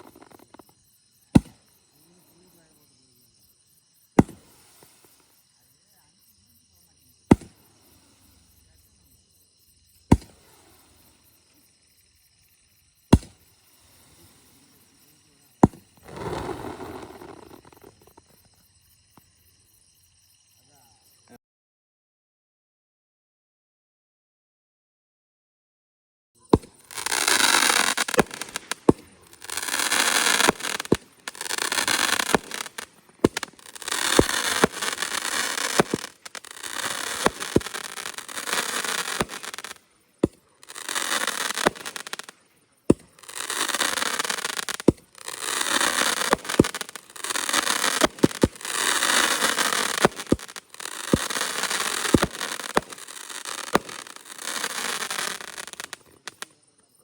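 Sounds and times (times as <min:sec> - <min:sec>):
firework shots popping and crackling: 0:00.0 - 0:00.7, 0:01.4 - 0:01.6, 0:04.2 - 0:05.1, 0:07.3 - 0:07.6, 0:10.1 - 0:10.7, 0:13.2 - 0:13.5, 0:15.6 - 0:18.3, 0:26.6 - 0:42.3, 0:42.9 - 0:56.5.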